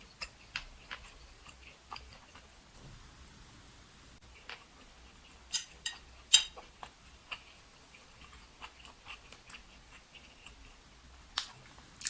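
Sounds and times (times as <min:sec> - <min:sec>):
wet chewing mouth clicks: 0:06.3 - 0:11.6.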